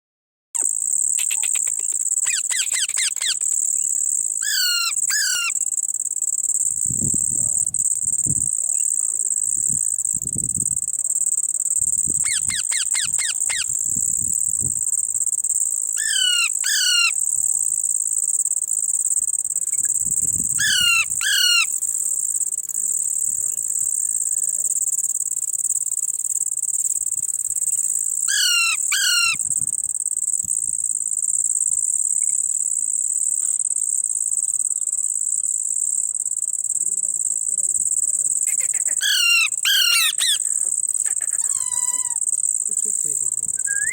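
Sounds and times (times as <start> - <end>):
crickets droning: 0.6 - 43.9
parrot calling: 1.2 - 3.5, 4.4 - 5.6, 12.2 - 13.7, 16.0 - 17.2, 20.6 - 21.7, 28.3 - 29.4, 38.5 - 42.2.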